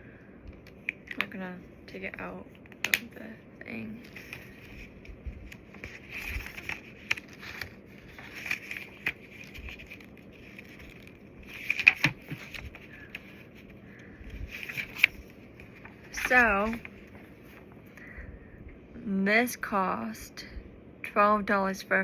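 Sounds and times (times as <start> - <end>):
packaging rustling: 4.0 - 17.8.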